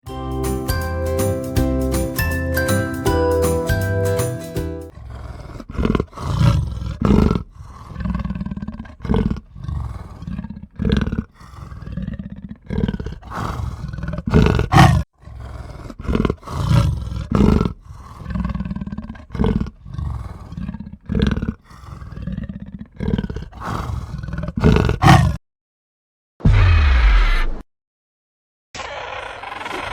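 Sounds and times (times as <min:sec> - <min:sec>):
bison bellows and grunts: 0:04.9 - 0:25.4.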